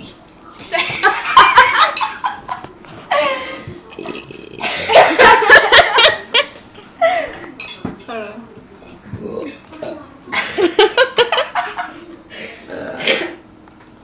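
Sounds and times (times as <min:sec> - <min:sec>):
people laughing: 0:00.8 - 0:03.7, 0:04.6 - 0:07.4, 0:10.3 - 0:12.2
people burping loudly: 0:03.9 - 0:05.2, 0:12.6 - 0:13.4.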